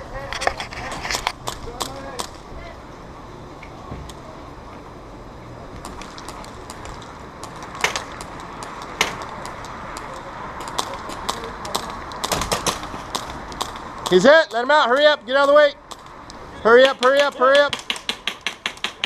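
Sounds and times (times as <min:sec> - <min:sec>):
airsoft guns firing: 0:05.8 - 0:16.1, 0:16.7 - 0:19.0.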